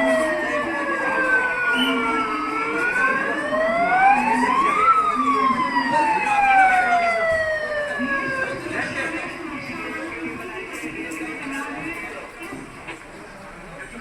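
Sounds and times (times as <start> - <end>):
siren wailing: 0.0 - 9.3.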